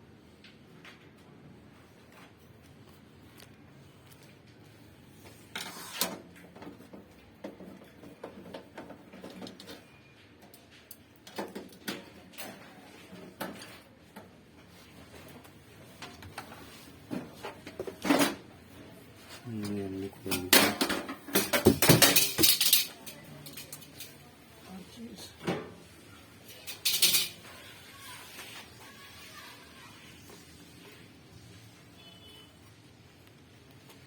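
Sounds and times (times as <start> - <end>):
heater parts knocking and rattling: 20.2 - 24.1.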